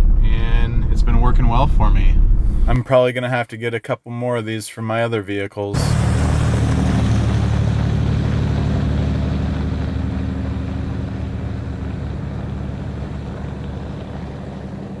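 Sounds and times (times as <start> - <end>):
truck engine humming: 5.8 - 15.0.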